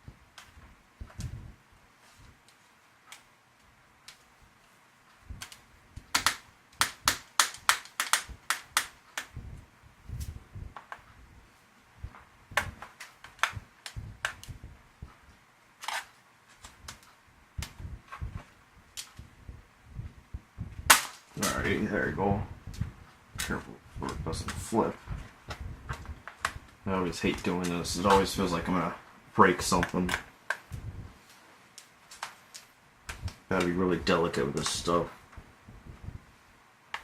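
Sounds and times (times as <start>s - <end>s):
sharp plastic clicks and snaps: 4.0s - 4.3s, 5.1s - 9.5s, 12.5s - 19.3s, 31.7s - 33.8s.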